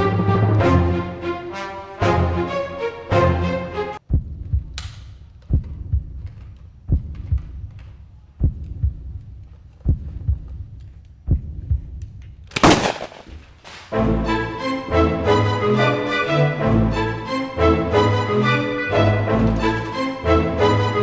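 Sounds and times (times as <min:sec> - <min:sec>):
heartbeat thumps: 0:04.0 - 0:04.8, 0:05.4 - 0:12.0.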